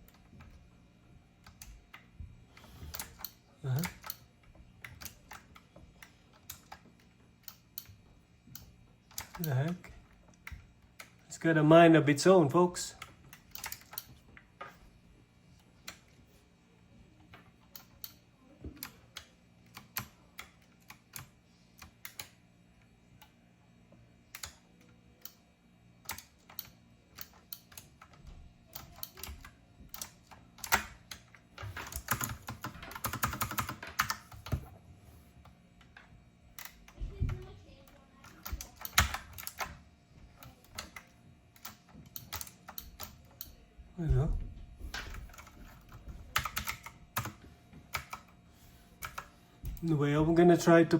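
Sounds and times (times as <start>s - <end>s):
keyboard keys clicking: 26.1s - 34.7s, 45.0s - 48.2s.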